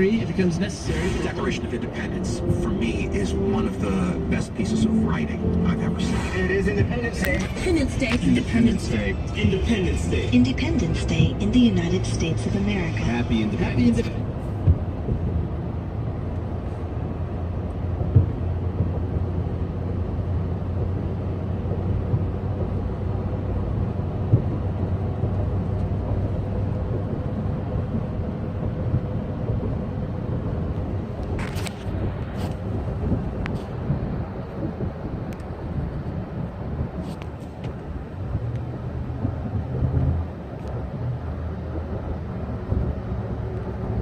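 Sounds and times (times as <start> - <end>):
car cabin rumble: 0.0 - 44.0
low hum: 0.0 - 44.0.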